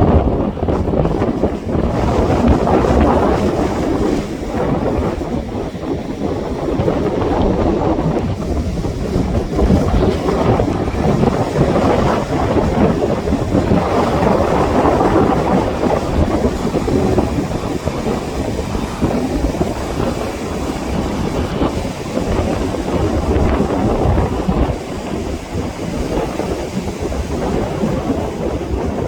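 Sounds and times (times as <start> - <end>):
sea waves breaking on shore: 0.0 - 29.0
wind buffeting microphone: 0.0 - 29.0.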